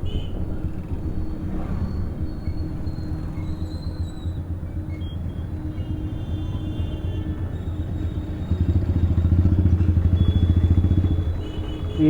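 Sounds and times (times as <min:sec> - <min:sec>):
motorcycle engine and exhaust: 0:07.6 - 0:12.0.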